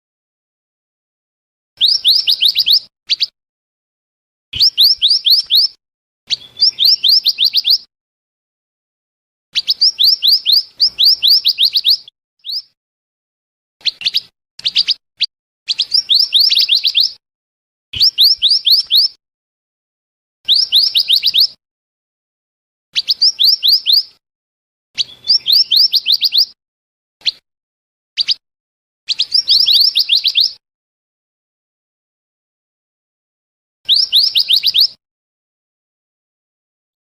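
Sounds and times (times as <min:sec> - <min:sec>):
high whistled bird notes: 0:01.8 - 0:03.4, 0:04.6 - 0:07.9, 0:09.6 - 0:12.8, 0:13.8 - 0:17.2, 0:18.0 - 0:19.2, 0:20.4 - 0:21.6, 0:23.0 - 0:24.2, 0:25.0 - 0:26.6, 0:28.2 - 0:28.4, 0:29.1 - 0:30.6, 0:33.9 - 0:35.0.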